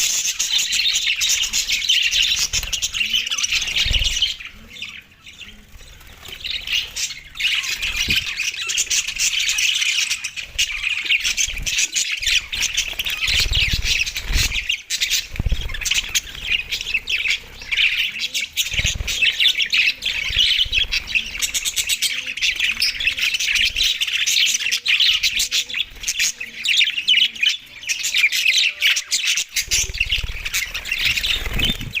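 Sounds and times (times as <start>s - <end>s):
budgerigars chattering and chirping: 0.0s - 32.0s.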